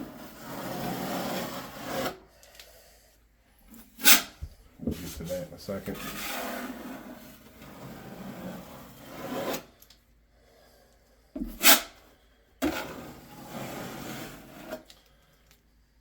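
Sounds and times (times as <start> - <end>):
tool scraping sealant: 4.0 - 4.4, 11.4 - 12.0, 12.6 - 14.9.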